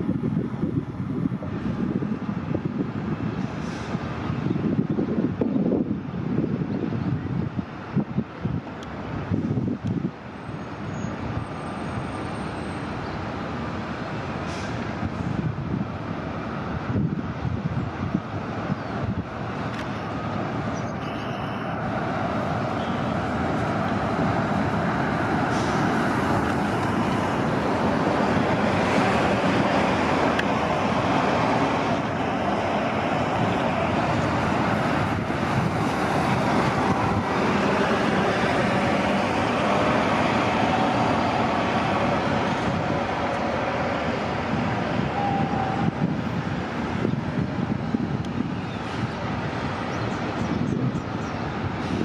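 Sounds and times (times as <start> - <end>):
bus engines running: 0.0 - 52.0.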